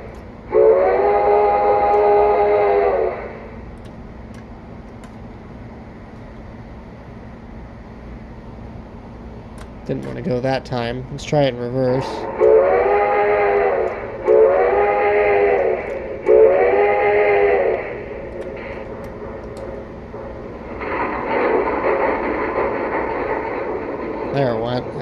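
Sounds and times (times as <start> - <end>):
steam whistle blasts: 0.5 - 3.5, 12.2 - 18.2
loud steam hiss: 12.2 - 18.9.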